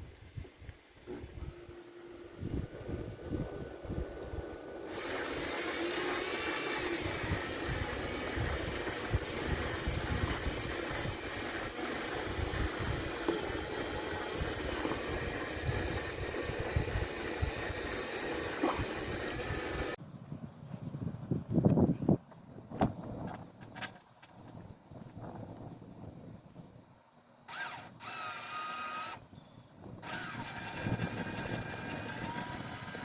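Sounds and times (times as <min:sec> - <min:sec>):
electric drill drilling: 0:04.8 - 0:20.0, 0:27.5 - 0:29.2, 0:30.0 - 0:33.0.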